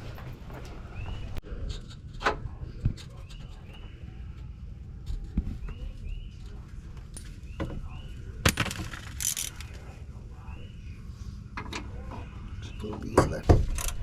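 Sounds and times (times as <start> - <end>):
metal parts clicking and clattering: 8.5 - 9.8.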